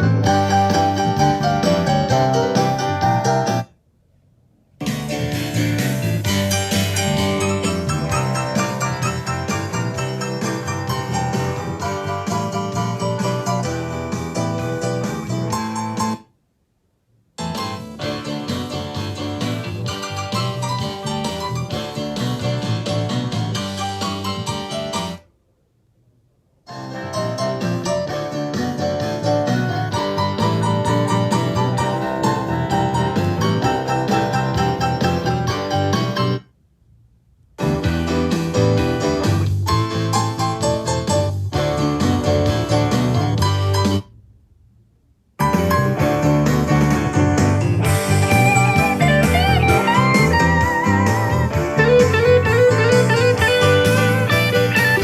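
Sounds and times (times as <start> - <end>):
piano melody over bass line: 0.0 - 3.7, 4.8 - 16.3, 17.4 - 25.3, 26.6 - 36.6, 37.6 - 44.4, 45.4 - 55.0
blues song through small speaker: 4.8 - 16.2, 45.4 - 55.0
wavering electric guitar lead: 6.7 - 11.9, 47.8 - 55.0.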